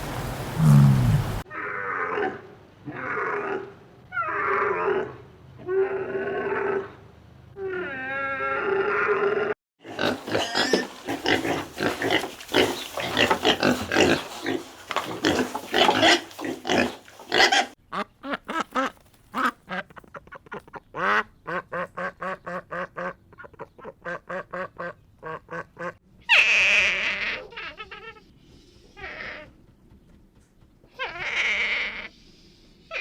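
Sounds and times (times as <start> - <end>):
farm animals calling: 9.9 - 29.7.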